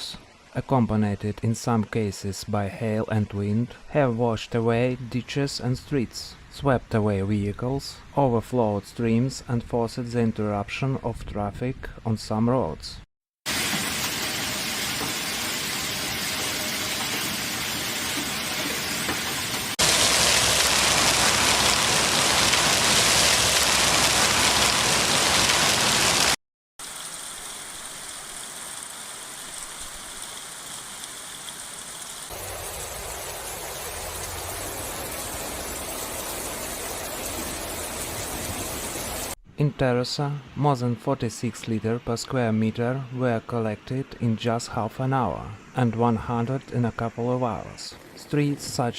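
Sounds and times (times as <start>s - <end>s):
heavy rain: 13.5s - 39.4s
rushing floodwater: 18.4s - 26.4s, 32.3s - 39.4s.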